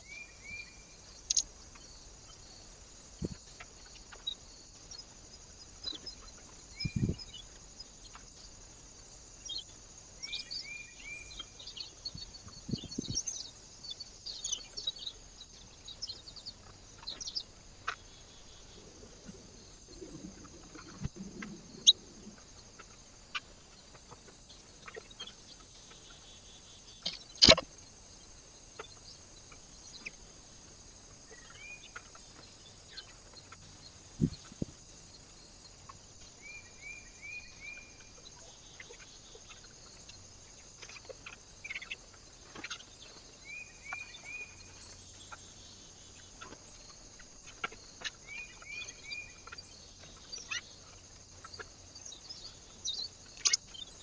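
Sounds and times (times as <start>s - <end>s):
faint hiss: 0.0s - 54.0s
small birds chirping: 0.0s - 54.0s
sharp loud click: 27.0s - 27.6s.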